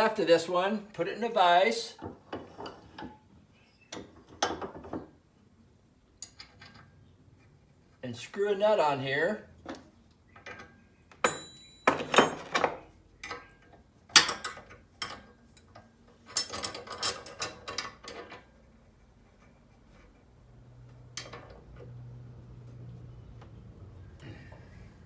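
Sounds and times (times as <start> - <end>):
metal tools clinking and scraping: 10.4 - 18.5
short metallic ring: 11.2 - 12.5.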